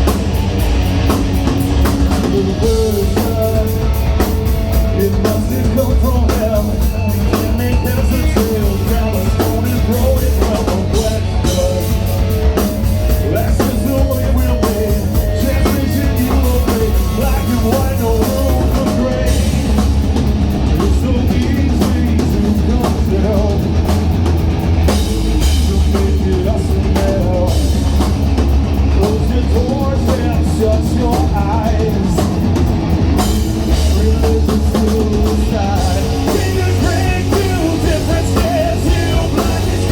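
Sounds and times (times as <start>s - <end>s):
live rock band playing: 0.0s - 39.9s
person singing: 2.1s - 4.2s, 4.9s - 12.2s, 13.1s - 19.8s, 33.7s - 39.9s.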